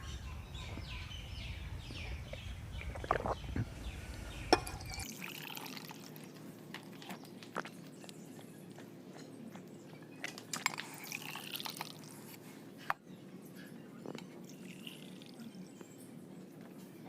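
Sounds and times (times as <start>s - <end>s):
water pouring into a glass: 4.5s - 6.2s, 10.8s - 12.1s, 14.5s - 15.5s.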